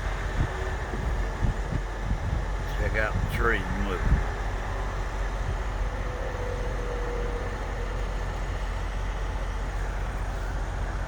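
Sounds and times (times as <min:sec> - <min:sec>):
road and wind noise: 0:00.0 - 0:11.0
truck engine drone: 0:00.0 - 0:11.0.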